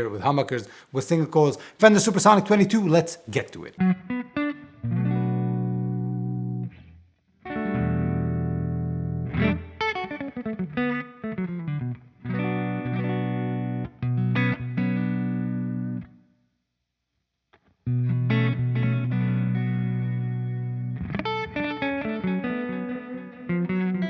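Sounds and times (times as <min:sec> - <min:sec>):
electric guitar chords with delay: 0:03.8 - 0:06.8, 0:07.5 - 0:16.1, 0:17.9 - 0:24.0.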